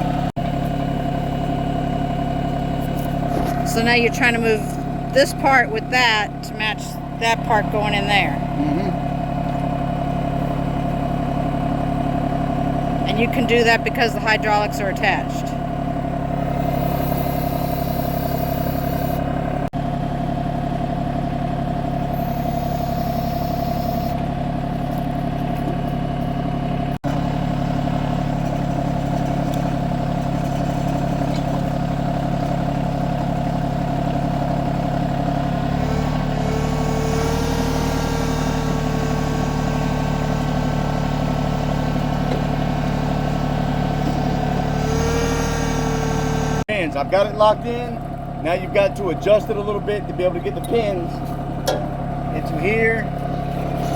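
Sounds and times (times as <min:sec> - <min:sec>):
tractor diesel engine running: 0:00.0 - 0:53.9
steady mechanical whine: 0:13.0 - 0:19.7, 0:21.8 - 0:25.9.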